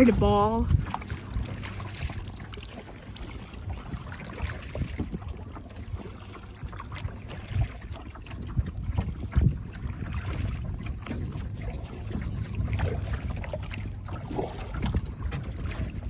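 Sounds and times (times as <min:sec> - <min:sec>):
steady low rumble: 0:00.0 - 0:16.0
water lapping around a kayak: 0:00.0 - 0:16.0
loud water splashes: 0:09.9 - 0:16.0.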